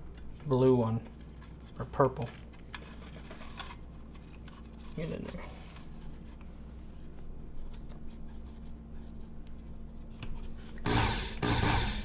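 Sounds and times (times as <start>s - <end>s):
sharpener belt whirring: 10.8s - 12.0s.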